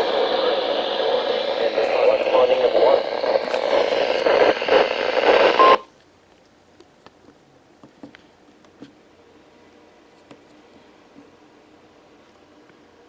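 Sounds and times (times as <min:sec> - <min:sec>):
unintelligible radio voice: 0:00.0 - 0:05.6
radio static hiss: 0:00.0 - 0:05.8
brief beep: 0:05.6 - 0:05.9.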